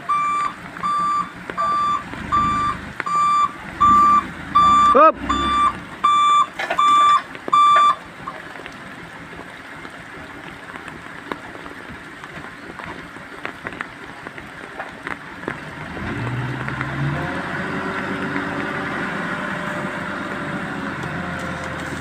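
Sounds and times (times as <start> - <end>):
truck reversing beeper: 0.0 - 8.0
diesel truck engine running: 0.0 - 9.4, 15.1 - 22.0
rain falling: 0.0 - 22.0.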